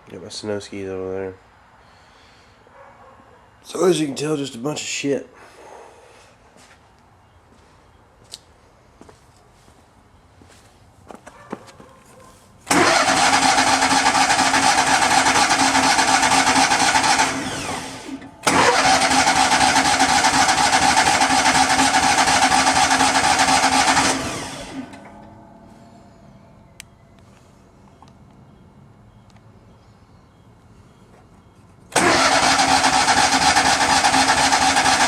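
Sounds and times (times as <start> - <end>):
engine cranking by starter: 12.7 - 25.8, 31.9 - 35.0.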